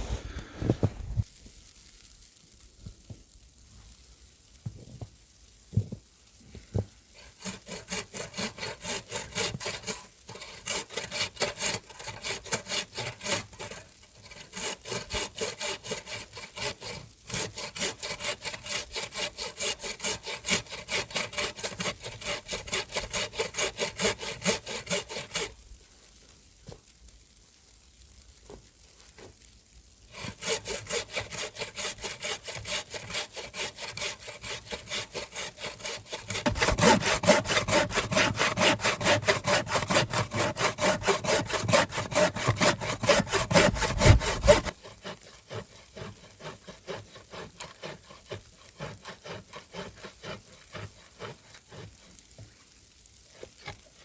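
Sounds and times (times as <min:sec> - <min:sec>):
hand saw cutting wood: 0:07.2 - 0:25.5, 0:30.1 - 0:52.2.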